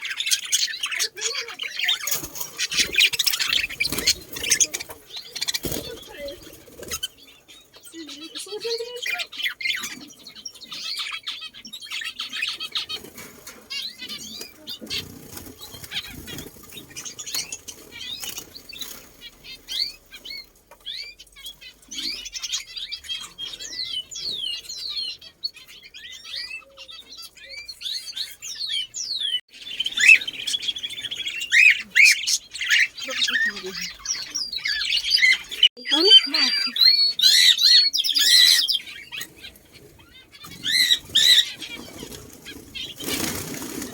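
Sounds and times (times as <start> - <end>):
wings fluttering: 0.0 - 10.1, 11.9 - 23.4, 29.6 - 43.9
small birds chirping and twittering: 0.0 - 43.9.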